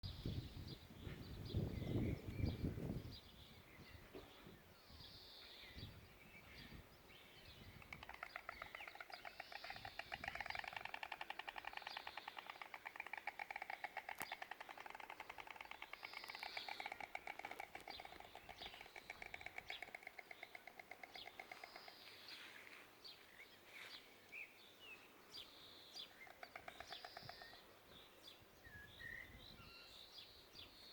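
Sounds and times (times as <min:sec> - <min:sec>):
small birds chirping: 0:00.0 - 0:30.9
storks clattering bills: 0:07.8 - 0:22.0.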